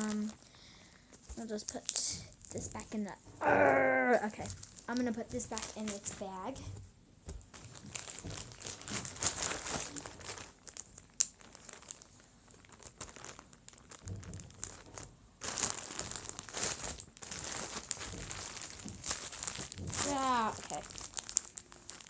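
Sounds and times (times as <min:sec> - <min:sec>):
plastic bag crinkling: 0:00.0 - 0:00.6, 0:04.4 - 0:06.6, 0:07.5 - 0:22.0
slime squishing: 0:07.6 - 0:22.0.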